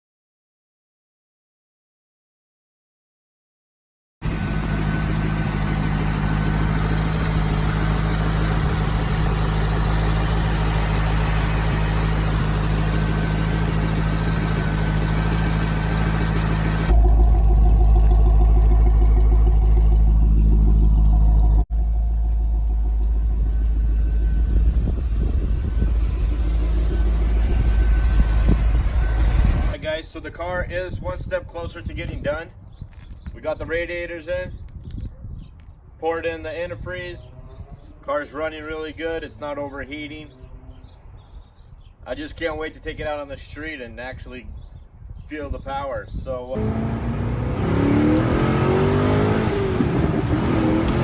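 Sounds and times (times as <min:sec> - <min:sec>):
car engine idling: 0:04.2 - 0:29.8, 0:46.6 - 0:51.0.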